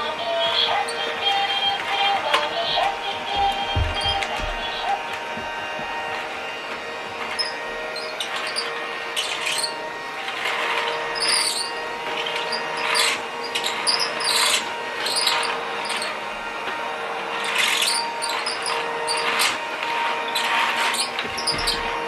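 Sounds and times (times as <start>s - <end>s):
toy vacuum motor whining: 0.0s - 22.0s.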